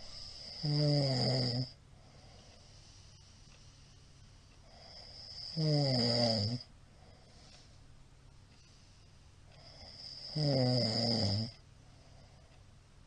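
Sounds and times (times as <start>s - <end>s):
man snoring: 0.1s - 1.8s, 4.8s - 6.7s, 9.6s - 11.6s.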